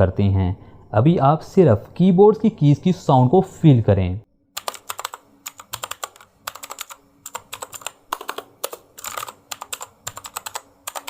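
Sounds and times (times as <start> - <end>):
mechanical keyboard typing: 4.6 - 11.0.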